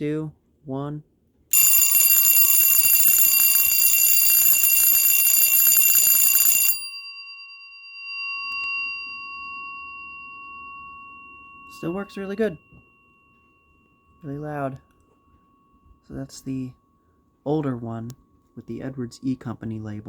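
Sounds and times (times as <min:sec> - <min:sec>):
vibrating school bell ringing: 0:01.5 - 0:14.6.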